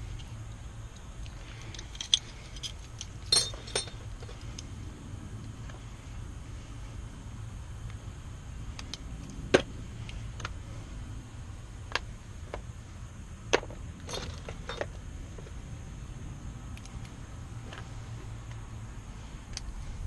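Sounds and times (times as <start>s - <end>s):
steady low hum: 0.0s - 20.0s
lock parts clicking: 0.9s - 4.6s, 14.0s - 15.0s.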